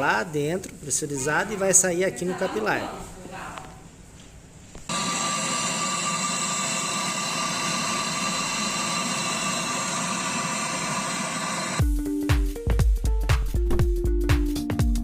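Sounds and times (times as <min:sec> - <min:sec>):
torch flame hissing: 0:04.9 - 0:11.8.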